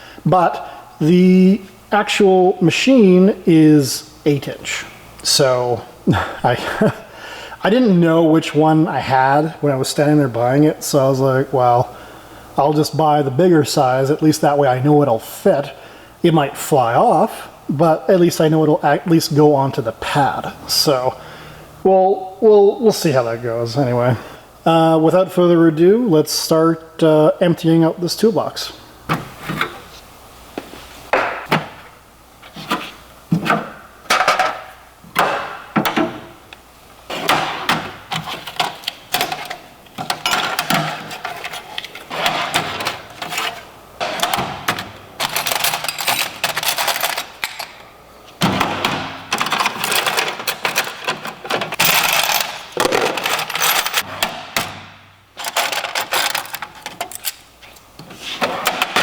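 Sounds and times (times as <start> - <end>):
metal tools clanking in toolbox: 38.1 - 47.8, 49.3 - 54.3, 55.4 - 57.4.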